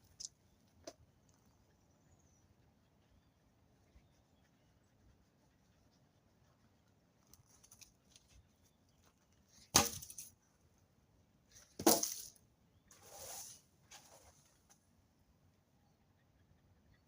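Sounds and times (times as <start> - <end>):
sharp wooden cracks: 9.6 - 10.3, 11.8 - 12.4.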